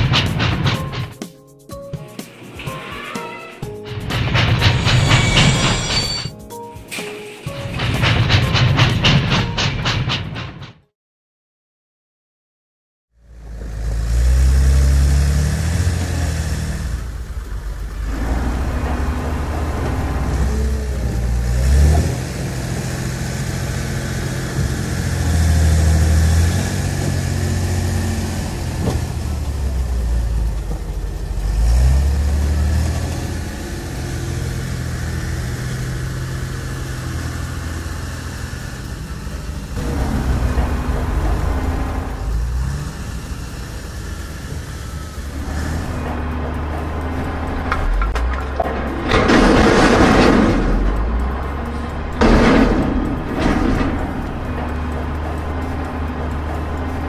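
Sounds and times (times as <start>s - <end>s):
heavy vehicle engine revving: 13.2s - 57.0s.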